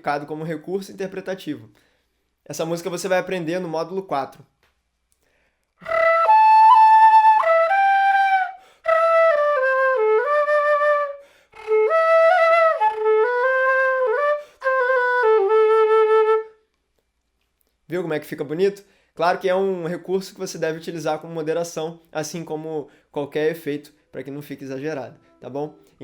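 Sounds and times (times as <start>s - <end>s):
flute melody: 5.8s - 16.7s.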